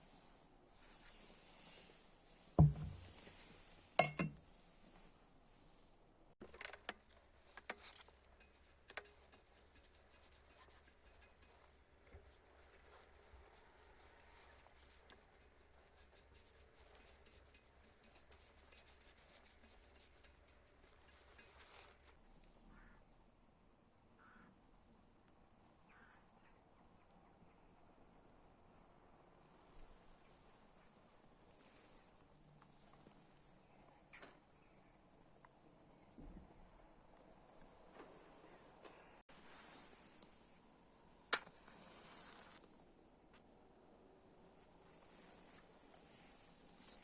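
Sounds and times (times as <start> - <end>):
faint handling noise: 0.0 - 22.2
sharp knocks: 2.6 - 3.2.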